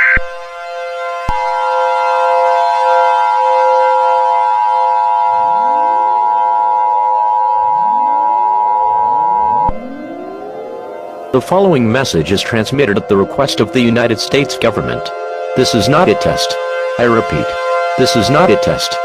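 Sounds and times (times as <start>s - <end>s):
siren wail rising in pitch: 0.0s - 19.0s
steady low tone: 4.5s - 18.8s
digital header tones: 5.3s - 19.0s
two-tone alert signal: 5.3s - 19.0s.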